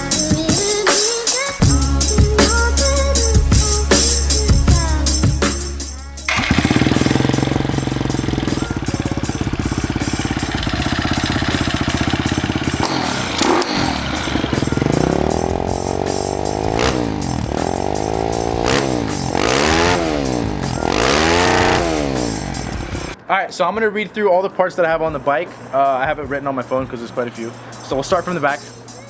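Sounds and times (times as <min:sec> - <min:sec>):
motorcycle engine idling and revving: 0:01.6 - 0:23.2.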